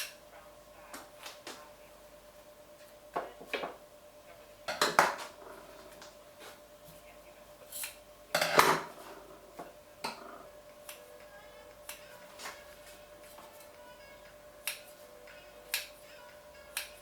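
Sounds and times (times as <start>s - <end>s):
dishes and utensils clattering: 8.4s - 9.2s.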